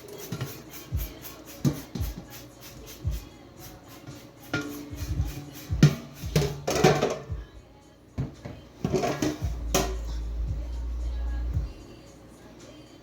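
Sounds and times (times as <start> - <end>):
background music: 0.0 - 13.0
dishes and pots clattering: 4.5 - 5.0, 5.8 - 7.3, 8.2 - 10.1.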